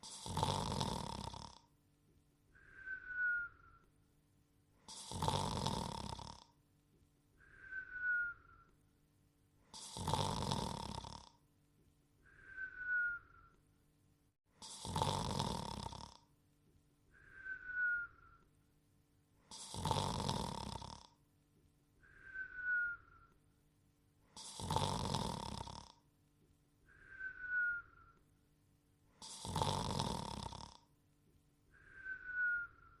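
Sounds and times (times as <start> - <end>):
cartoon rasping snore: 0.0 - 1.7, 4.9 - 6.6, 9.7 - 11.4, 14.6 - 16.3, 19.5 - 21.2, 24.3 - 26.0, 29.2 - 30.9
falling whistle: 2.8 - 3.8, 12.4 - 13.5, 22.1 - 23.3, 26.9 - 28.2, 31.8 - 33.0.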